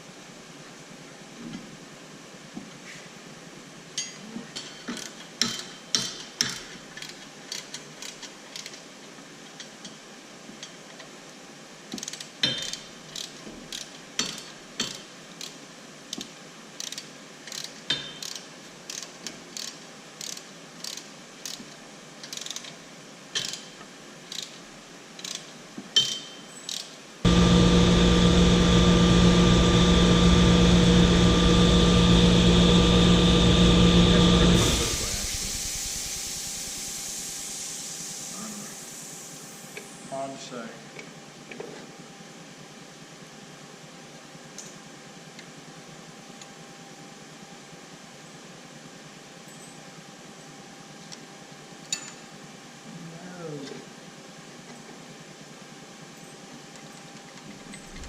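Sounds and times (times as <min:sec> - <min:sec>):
loud engine hum: 0:27.3 - 0:37.0.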